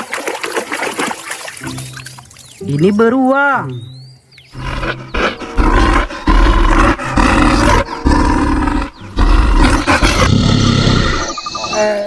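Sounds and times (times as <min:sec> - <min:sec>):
bear roaring: 0:04.5 - 0:11.5.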